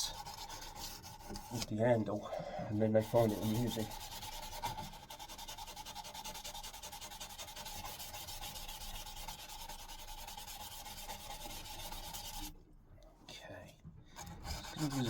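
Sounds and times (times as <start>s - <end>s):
sanding steel axe head: 2.9s - 12.5s, 14.5s - 15.0s.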